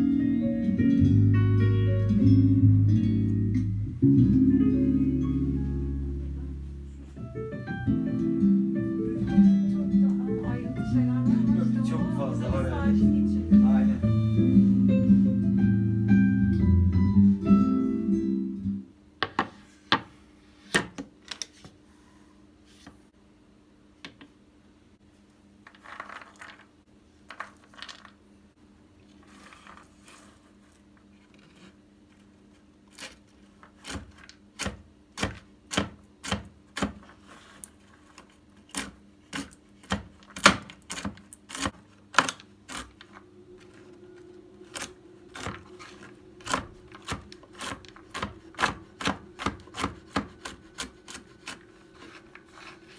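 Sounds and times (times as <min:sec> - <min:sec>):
steady low hum: 0:00.0 - 0:20.7, 0:41.7 - 0:52.9.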